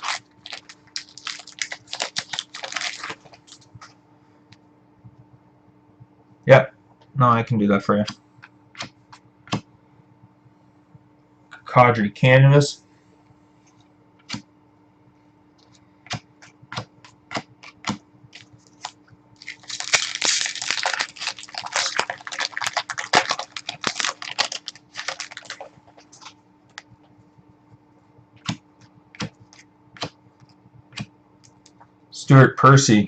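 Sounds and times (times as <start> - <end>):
card packs rustling and crinkling: 0.0 - 3.7, 18.4 - 26.4.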